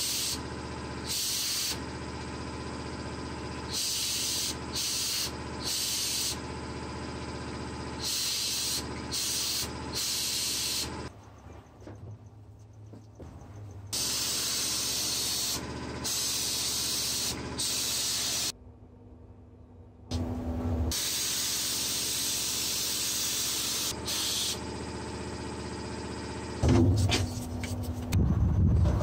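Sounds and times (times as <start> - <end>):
loud steady hiss: 8.0 - 10.9, 13.9 - 18.5, 20.9 - 24.6
heavy low rumble: 26.6 - 29.0.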